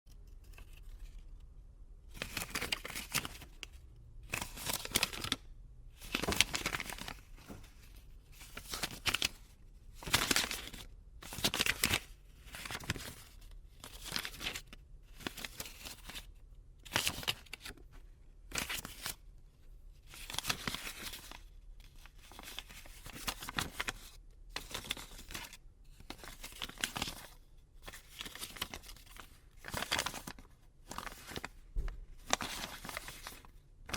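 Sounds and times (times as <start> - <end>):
paper banknotes rustling: 2.1 - 3.6, 4.3 - 5.4, 6.0 - 17.9, 18.5 - 19.2, 20.1 - 33.9.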